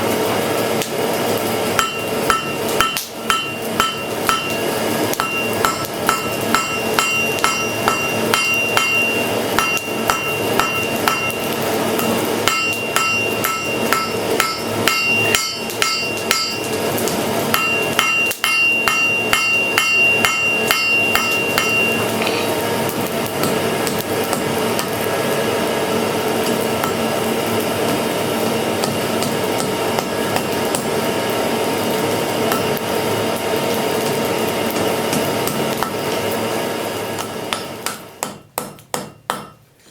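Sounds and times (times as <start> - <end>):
hammer striking steel on anvil: 1.8 - 22.6, 26.4 - 27.2, 28.8 - 30.9, 32.5 - 32.8, 34.7 - 36.1, 37.2 - 39.9.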